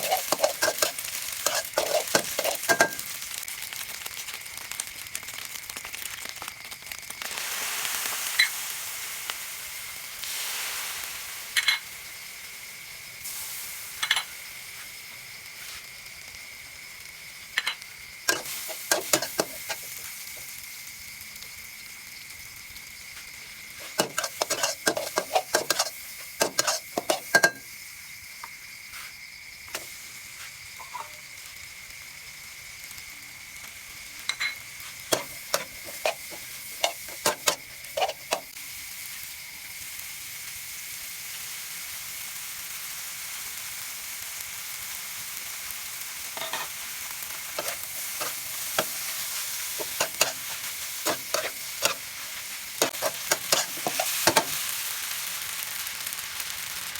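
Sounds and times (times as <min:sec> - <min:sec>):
spatula scraping a pan: 0:00.0 - 0:03.1, 0:18.3 - 0:20.1, 0:23.8 - 0:27.6, 0:34.4 - 0:38.5, 0:46.4 - 0:46.8, 0:47.4 - 0:54.7
food sizzling in a pan: 0:00.0 - 0:56.9.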